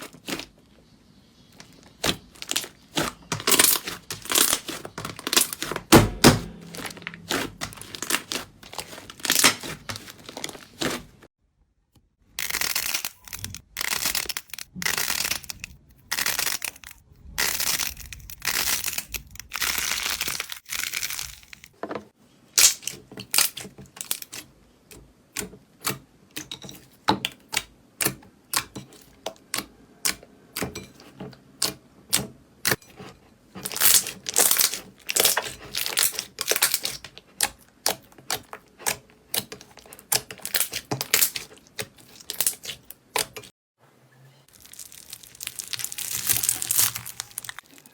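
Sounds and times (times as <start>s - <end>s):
slime squeezing crackles: 1.5s - 5.9s, 6.7s - 11.2s, 33.6s - 43.5s, 44.5s - 47.9s.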